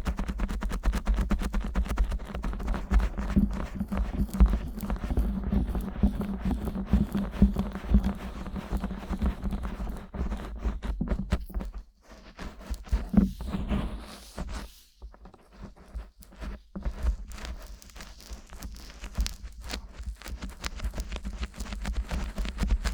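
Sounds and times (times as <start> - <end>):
fingers rubbing on microphone: 0.0 - 22.9.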